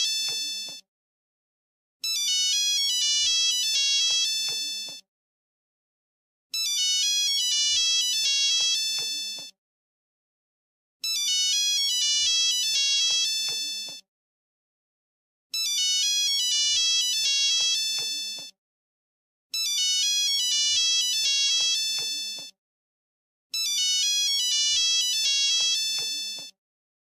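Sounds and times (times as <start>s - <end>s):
mobile phone ringtone melody: 0.0s - 0.8s, 2.0s - 5.0s, 6.6s - 9.5s, 11.0s - 14.0s, 15.6s - 18.5s, 19.6s - 22.5s, 23.6s - 26.5s.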